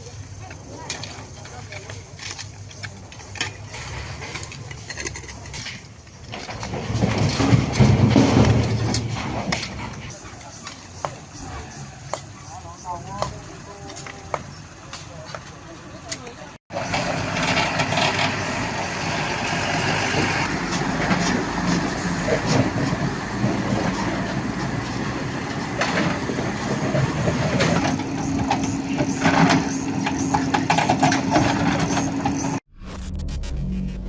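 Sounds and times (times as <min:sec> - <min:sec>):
gravel crunching and knocking: 0:00.0 - 0:18.6
heavy vehicle engine running: 0:00.0 - 0:34.0.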